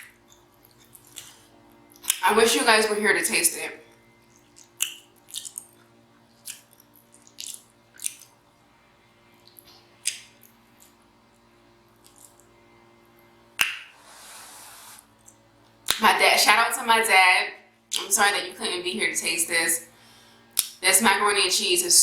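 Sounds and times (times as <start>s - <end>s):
person chewing with lip smacks: 0.3s - 2.2s, 4.3s - 8.4s
breathy exhale: 20.0s - 20.5s.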